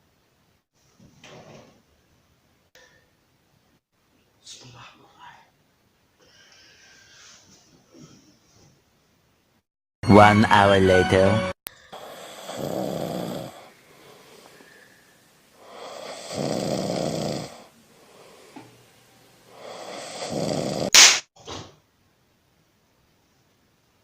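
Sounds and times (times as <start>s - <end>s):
person snoring: 11.9s - 14.6s, 15.6s - 18.6s, 19.5s - 20.9s.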